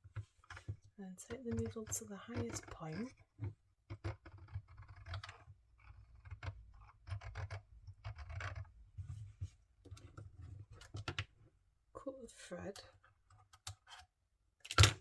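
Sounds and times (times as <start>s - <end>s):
plastic clicks and scratching: 0.0s - 11.4s, 12.7s - 15.0s.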